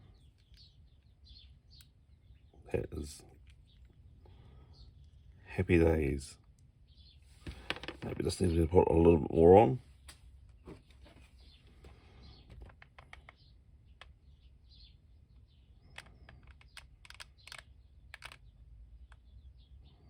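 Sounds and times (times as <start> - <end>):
small plastic clicks and taps: 12.5 - 14.2, 15.9 - 19.3.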